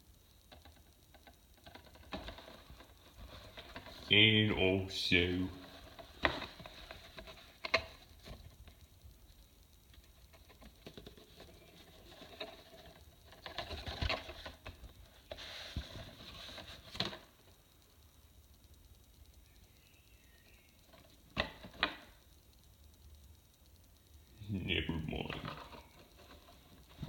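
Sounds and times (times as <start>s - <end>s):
crackly plastic rustling: 0.4s - 4.3s, 5.5s - 17.6s.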